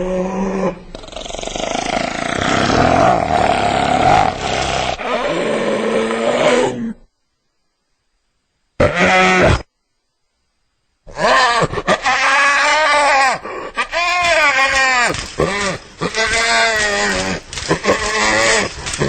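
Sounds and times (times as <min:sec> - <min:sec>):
hyena calling: 0:11.1 - 0:19.0.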